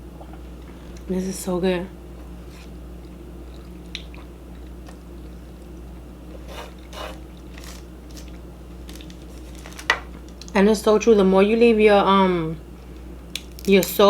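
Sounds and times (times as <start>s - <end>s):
person chewing food: 2.2s - 9.4s.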